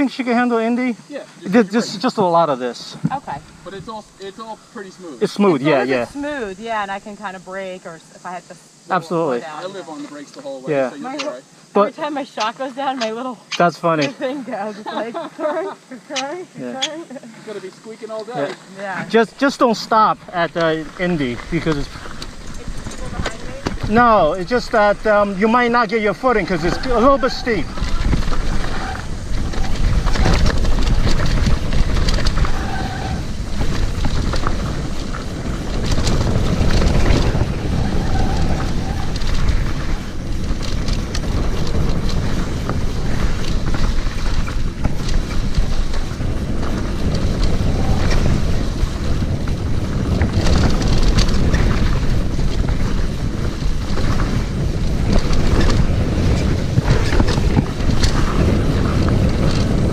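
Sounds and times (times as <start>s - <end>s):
mountain bike clattering on trail: 1.5s - 59.9s
wind on microphone: 18.2s - 59.9s.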